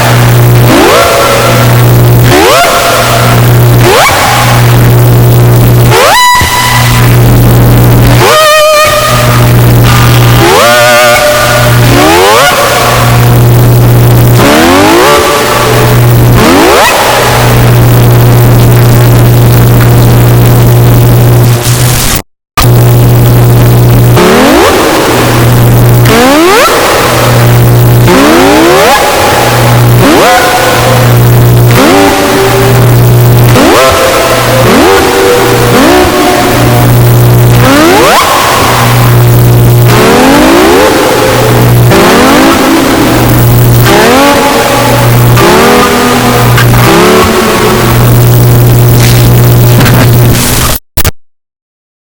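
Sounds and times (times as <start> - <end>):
low hum: 0.0 - 50.5
distorted rising revving sweep: 0.0 - 50.8.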